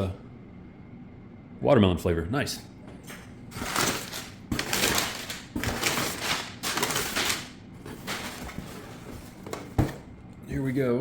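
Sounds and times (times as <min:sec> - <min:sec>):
cardboard packaging rustling: 0:03.5 - 0:10.1.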